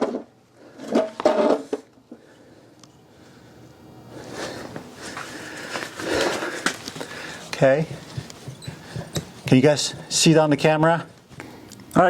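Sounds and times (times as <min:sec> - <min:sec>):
wheel scuffing: 0:04.2 - 0:10.4.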